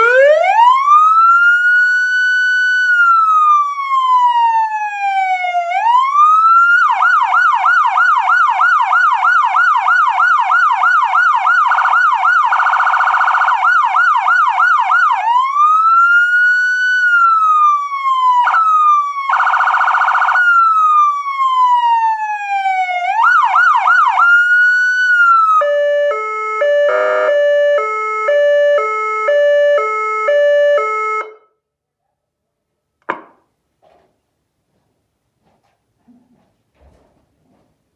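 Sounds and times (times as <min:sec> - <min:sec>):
electronic siren wailing and yelping: 0:00.0 - 0:31.4.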